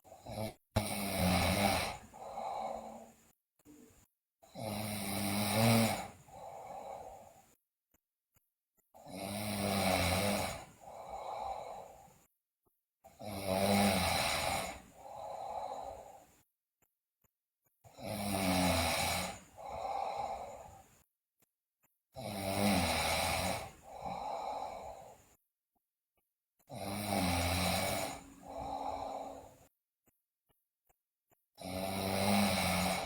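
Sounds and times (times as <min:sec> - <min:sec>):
girl snoring loudly: 0:00.0 - 0:03.2, 0:04.5 - 0:07.4, 0:09.0 - 0:12.1, 0:13.1 - 0:16.2, 0:17.9 - 0:20.8, 0:22.2 - 0:25.2, 0:26.7 - 0:29.7, 0:31.6 - 0:33.0.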